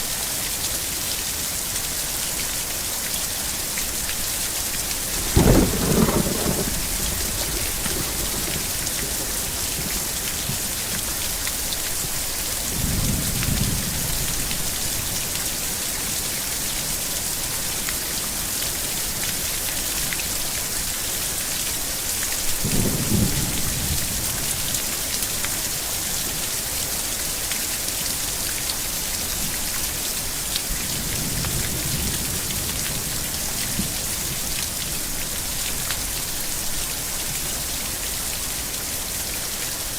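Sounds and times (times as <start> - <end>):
heavy rain: 0.0 - 39.9
thunder rumbling: 5.0 - 11.3.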